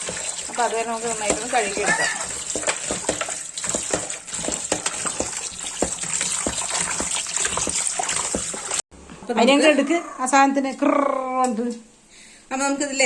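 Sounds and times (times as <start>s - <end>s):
tap water gushing: 0.0s - 8.9s
small knocks and clatters: 1.2s - 8.8s.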